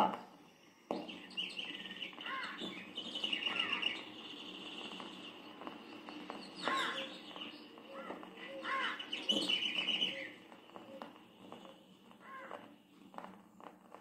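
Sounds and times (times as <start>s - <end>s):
wild birds calling: 0.0s - 13.2s.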